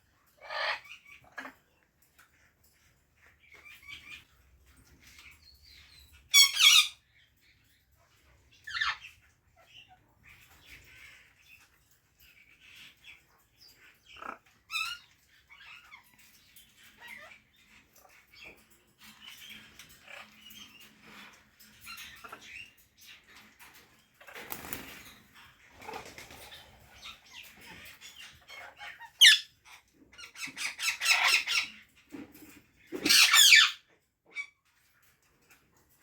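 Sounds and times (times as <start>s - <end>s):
parrot chirps and chatter: 0.0s - 36.0s
parrot squawking: 6.3s - 7.0s, 28.6s - 29.5s, 33.0s - 33.8s.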